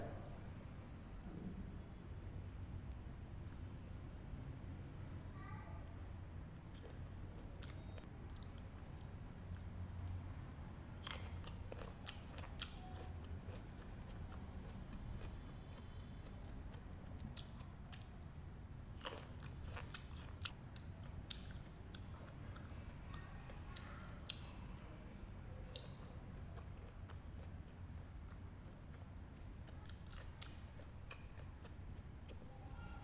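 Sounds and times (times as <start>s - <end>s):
low steady hum: 0.0s - 33.0s
crunchy fruit chewing: 11.0s - 18.1s, 19.0s - 23.0s.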